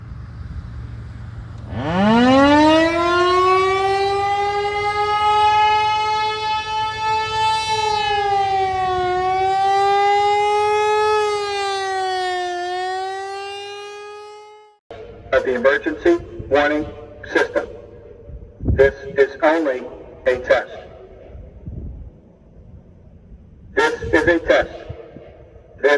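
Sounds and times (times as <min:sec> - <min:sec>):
outdoor warning siren: 0:00.0 - 0:25.9.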